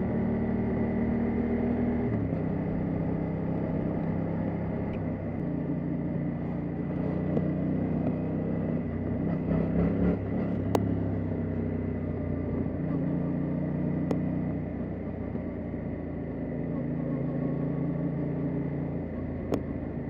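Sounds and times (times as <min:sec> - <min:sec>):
motorcycle engine running: 0:00.0 - 0:20.0.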